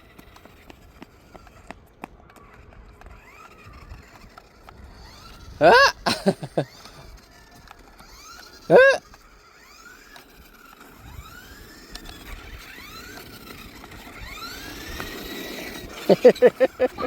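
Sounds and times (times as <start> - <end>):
toy car electric motor whining: 0.0 - 17.0
short loud pitched sounds: 8.7 - 9.0.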